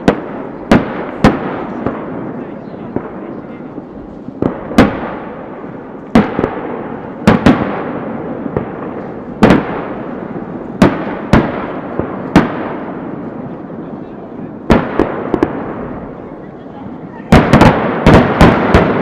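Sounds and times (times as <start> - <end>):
firework shells booming: 0.0 - 19.0
rolling echo: 0.0 - 19.0.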